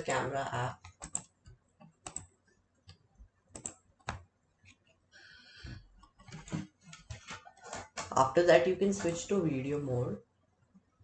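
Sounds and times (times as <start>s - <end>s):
computer keyboard clicks: 0.8s - 2.3s, 3.5s - 4.2s.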